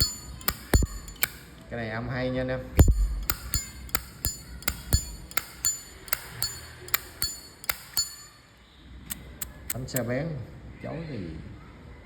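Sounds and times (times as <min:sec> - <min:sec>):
lighter lid clacking open and shut: 0:00.0 - 0:01.5.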